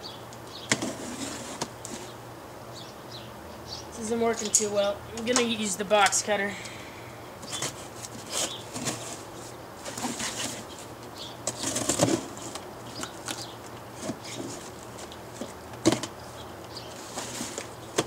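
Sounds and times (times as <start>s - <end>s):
cardboard clicks and rustles: 7.4s - 16.2s, 16.8s - 18.0s.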